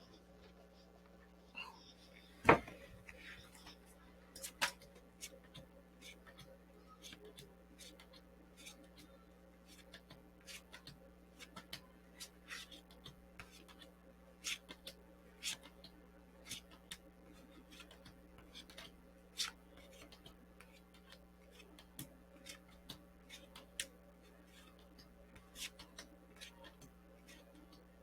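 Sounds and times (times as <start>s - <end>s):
low electrical hum: 0.0s - 28.0s
cards being shuffled: 17.6s - 23.9s.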